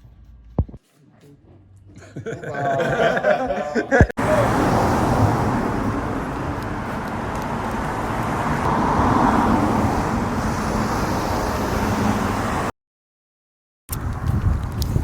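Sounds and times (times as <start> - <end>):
car engine and road noise: 4.1 - 12.7.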